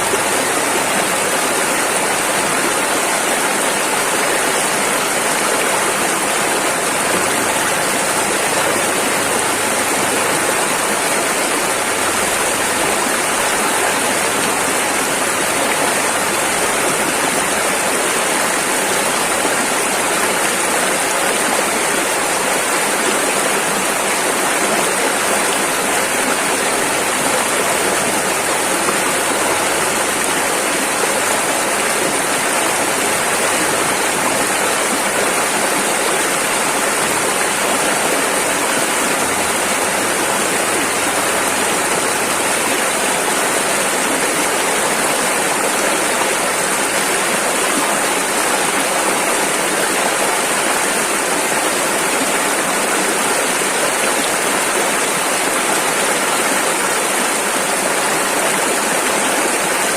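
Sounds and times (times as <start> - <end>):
river rushing over rapids: 0.0 - 59.9.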